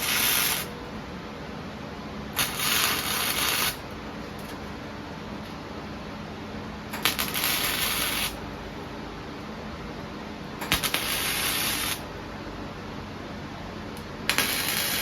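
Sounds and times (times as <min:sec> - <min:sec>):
welding arc crackling: 0:00.0 - 0:00.8, 0:02.4 - 0:04.8, 0:06.9 - 0:08.6, 0:10.6 - 0:12.2, 0:14.0 - 0:15.0.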